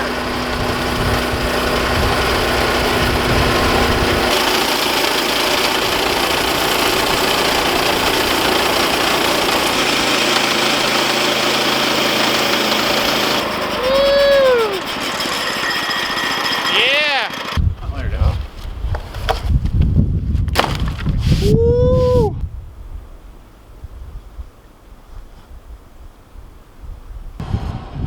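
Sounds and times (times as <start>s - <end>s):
sawmill engine cutting log: 0.0s - 17.7s.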